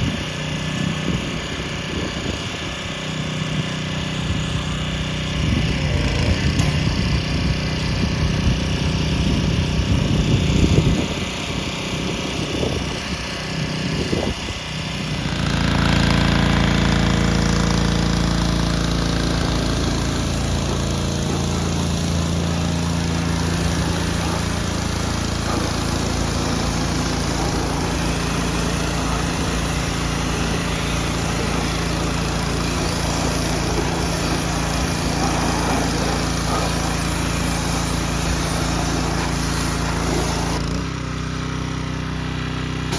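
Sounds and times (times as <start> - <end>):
pressure washer engine running: 0.0 - 42.9.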